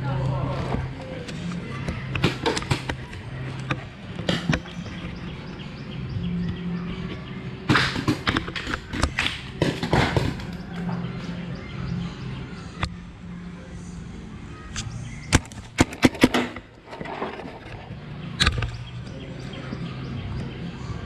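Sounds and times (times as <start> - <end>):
paintball markers firing: 14.8 - 16.6.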